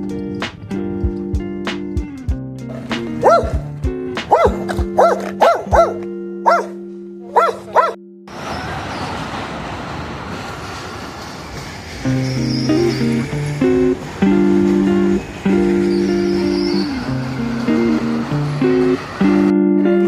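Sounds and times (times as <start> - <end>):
background music: 0.0 - 7.9
small dog barking: 2.8 - 3.7, 4.3 - 8.0
steady rushing noise: 8.3 - 19.5.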